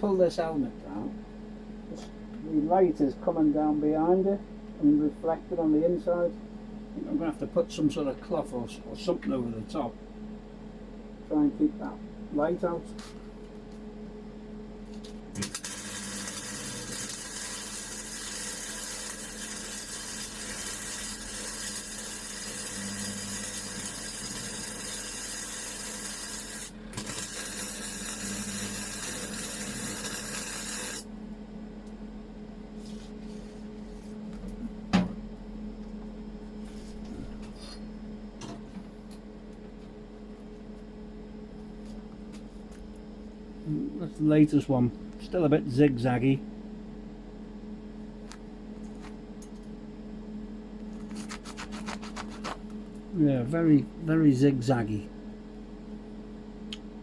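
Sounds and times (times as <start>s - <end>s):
steady low hum: 0.0s - 57.0s
welding arc hiss and crackle: 14.9s - 31.1s.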